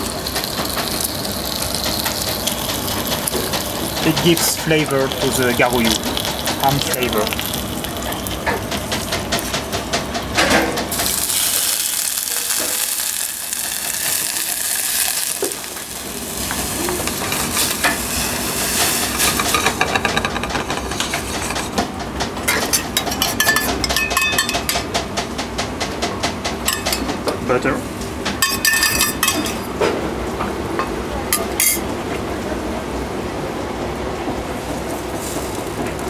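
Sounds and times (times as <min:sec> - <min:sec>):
ham sizzling in a pan: 0:00.0 - 0:21.8
utensil tapping and scraping pan: 0:16.5 - 0:25.0.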